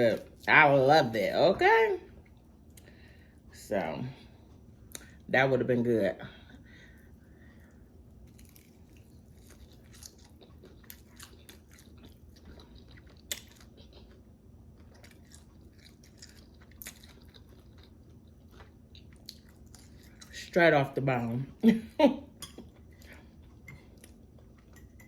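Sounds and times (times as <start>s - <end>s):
chewing crispy fried chicken: 7.0s - 20.6s.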